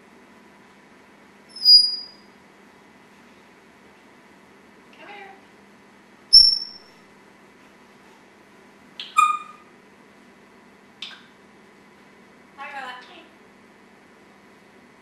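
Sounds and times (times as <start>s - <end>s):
parrot whistling and calling: 1.5s - 2.2s, 6.4s - 6.9s, 9.0s - 9.7s.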